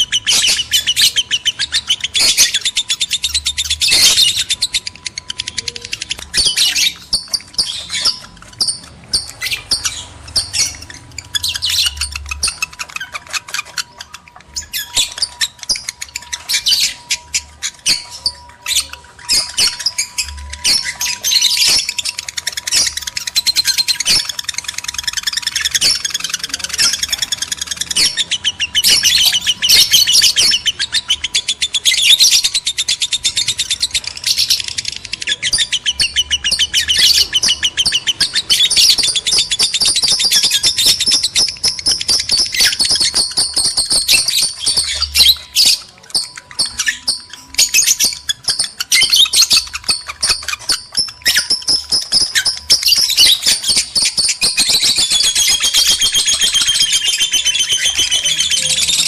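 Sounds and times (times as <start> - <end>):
lovebirds chattering: 0.0 - 59.0.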